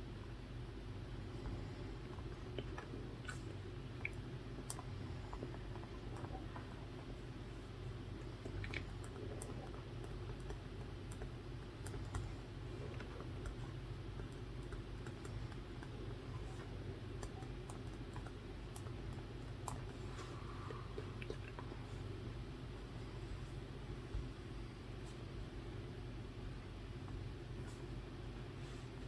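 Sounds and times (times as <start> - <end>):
steady low hum: 0.0 - 29.0
computer keyboard typing: 8.4 - 16.1, 17.1 - 19.9.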